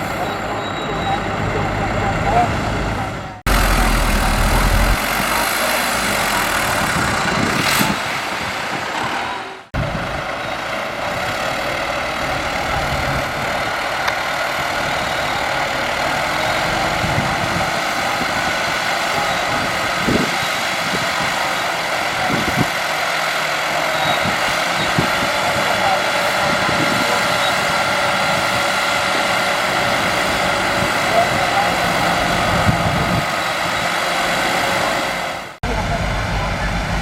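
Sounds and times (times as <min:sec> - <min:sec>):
heavy diesel engine running: 0:00.0 - 0:37.0.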